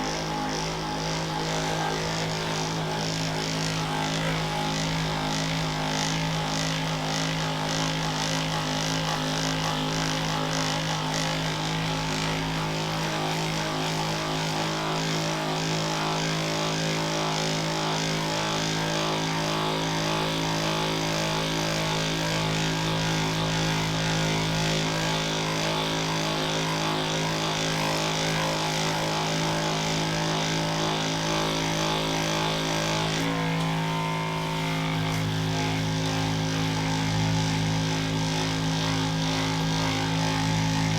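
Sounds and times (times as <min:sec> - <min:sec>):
electric massager motor hum: 0:00.0 - 0:40.9.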